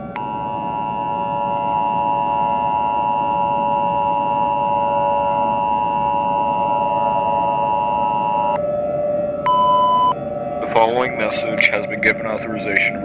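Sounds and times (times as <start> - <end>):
two-tone alarm: 0.0 - 8.6, 9.5 - 10.2.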